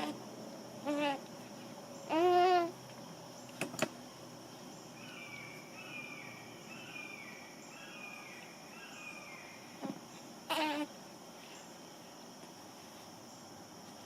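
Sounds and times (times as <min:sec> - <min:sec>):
high insect drone: 0:00.0 - 0:14.0
bird chirping: 0:03.3 - 0:10.8.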